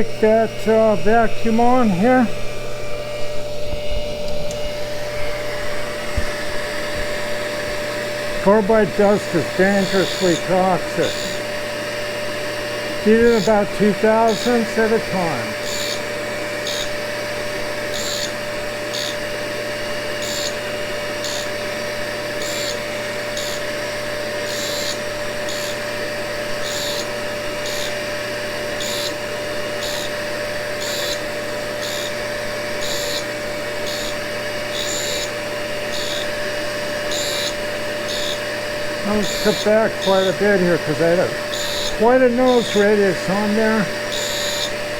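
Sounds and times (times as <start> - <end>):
vacuum hiss pulsing: 0.0 - 16.4, 37.7 - 44.2
grinder machine hum: 0.0 - 44.9.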